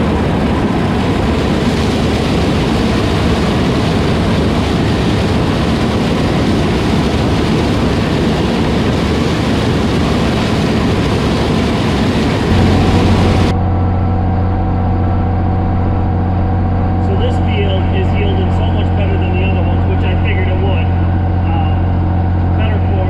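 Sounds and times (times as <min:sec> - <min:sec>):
low engine hum: 0:00.0 - 0:23.0
heavy farm machinery running: 0:12.4 - 0:23.0.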